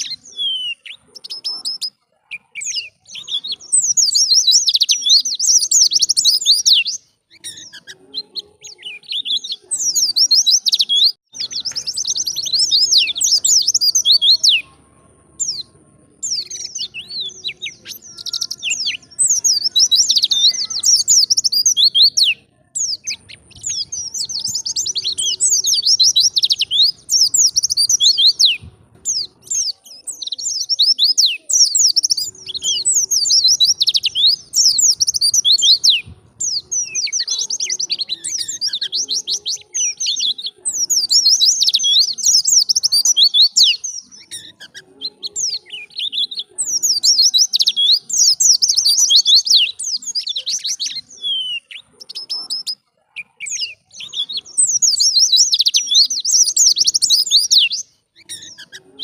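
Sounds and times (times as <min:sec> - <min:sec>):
bird twittering: 0:00.0 - 0:59.0.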